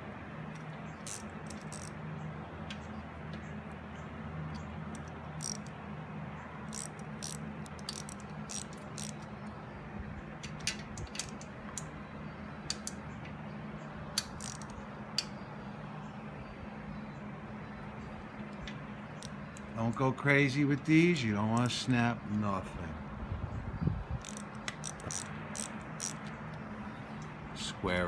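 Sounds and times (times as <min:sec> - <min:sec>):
steady low hum: 0:00.0 - 0:28.0
ratchet wrench clicking: 0:00.6 - 0:02.0, 0:04.5 - 0:05.7, 0:06.7 - 0:09.3, 0:10.4 - 0:11.9, 0:14.2 - 0:15.3, 0:24.2 - 0:26.6.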